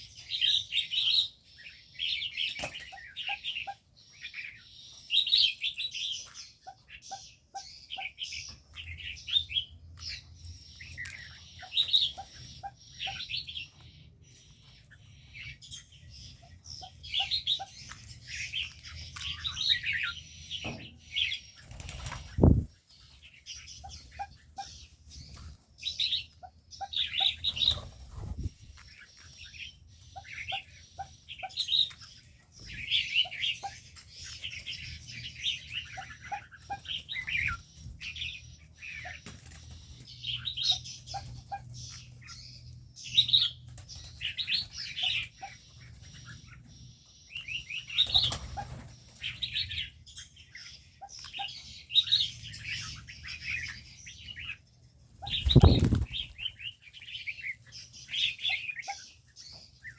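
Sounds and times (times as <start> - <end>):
small birds chirping: 0.0 - 59.9
wings flapping: 21.6 - 22.7, 55.2 - 56.6.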